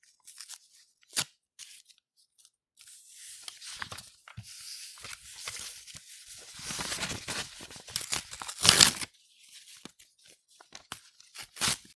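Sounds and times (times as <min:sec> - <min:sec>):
paper crinkling: 0:03.4 - 0:12.0
paper tearing: 0:06.6 - 0:09.1, 0:11.3 - 0:12.0.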